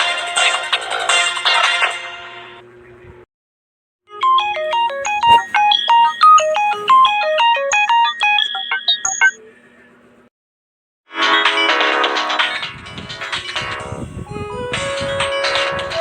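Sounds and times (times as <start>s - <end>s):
smartphone ringtone melody: 4.1s - 9.4s, 14.2s - 16.0s.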